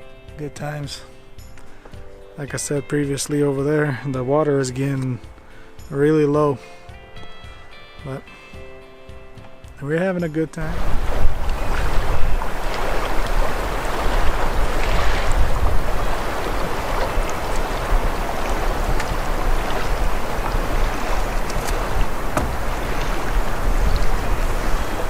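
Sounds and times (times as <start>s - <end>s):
wind buffeting microphone: 10.6s - 25.0s.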